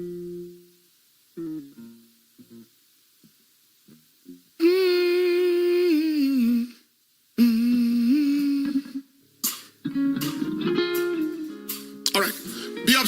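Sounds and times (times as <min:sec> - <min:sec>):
person humming: 0:00.0 - 0:00.7, 0:04.6 - 0:09.1.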